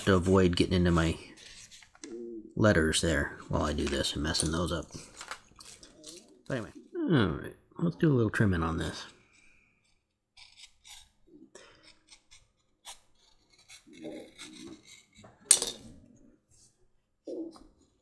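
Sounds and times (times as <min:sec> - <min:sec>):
leather scraping cuts: 0:09.3 - 0:15.3.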